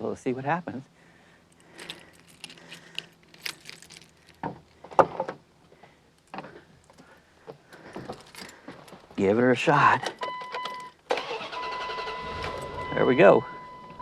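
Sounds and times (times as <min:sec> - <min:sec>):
keys jingling: 0:01.5 - 0:04.8, 0:07.7 - 0:09.2.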